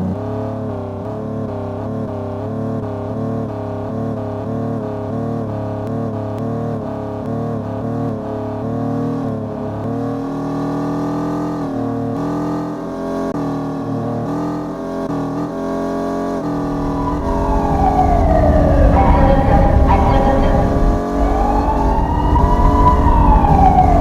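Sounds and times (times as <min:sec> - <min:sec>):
car engine drone: 0:16.1 - 0:24.0
low rumble: 0:16.5 - 0:24.0.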